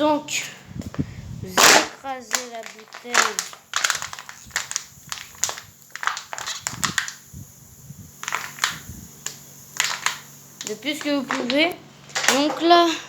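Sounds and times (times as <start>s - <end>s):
plastic bottle being crushed: 1.6s - 7.3s, 8.2s - 12.7s.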